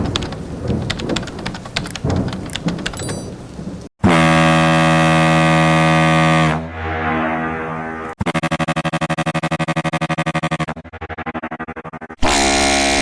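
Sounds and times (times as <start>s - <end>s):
rain: 3.3s - 3.9s
ship horn long blast: 4.1s - 8.1s.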